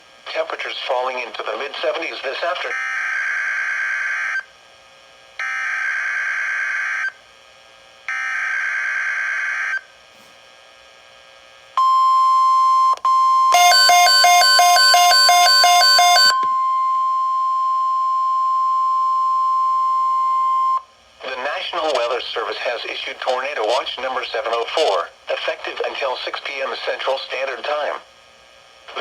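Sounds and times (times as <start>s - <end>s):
steady warning alarm tone: 11.8s - 20.9s
loud electronic beeping: 13.5s - 20.8s.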